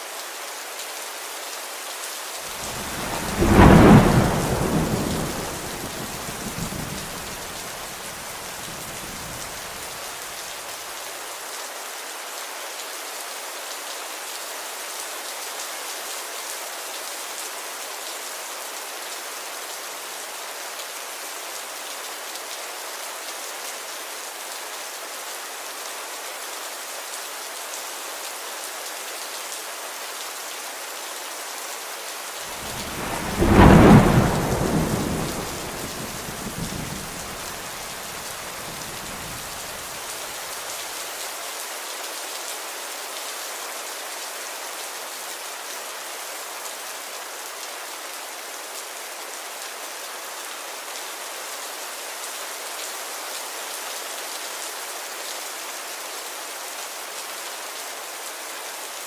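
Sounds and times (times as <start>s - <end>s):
steady rain falling: 0.0s - 59.0s
thunder crack rumbling: 2.6s - 7.9s, 32.5s - 39.9s.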